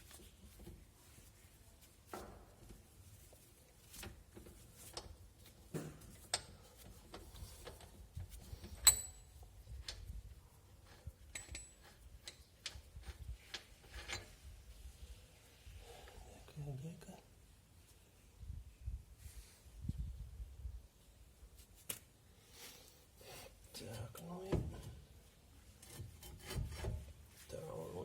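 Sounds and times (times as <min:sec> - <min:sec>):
metal tools clicking and tapping: 0:08.8 - 0:10.0, 0:11.3 - 0:12.8.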